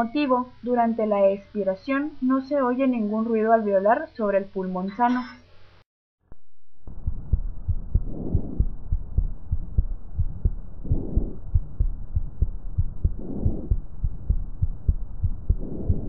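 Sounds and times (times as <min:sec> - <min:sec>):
heartbeat thuds: 0:06.9 - 0:16.0
breath sounds through stethoscope: 0:13.1 - 0:13.8, 0:15.5 - 0:16.0.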